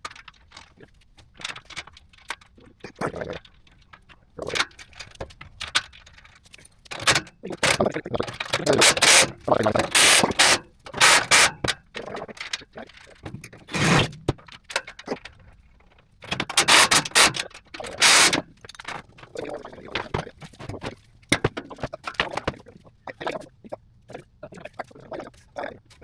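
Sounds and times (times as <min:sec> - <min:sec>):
sharp clicks: 0:06.5 - 0:12.3, 0:16.3 - 0:21.4
scraping and rubbing strokes: 0:08.6 - 0:12.2, 0:13.7 - 0:14.3, 0:16.5 - 0:18.4.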